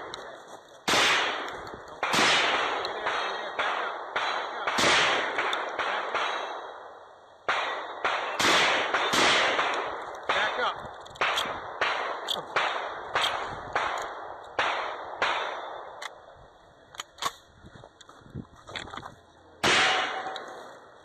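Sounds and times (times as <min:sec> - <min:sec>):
gunshots with echo: 0:00.8 - 0:16.0, 0:19.6 - 0:20.8.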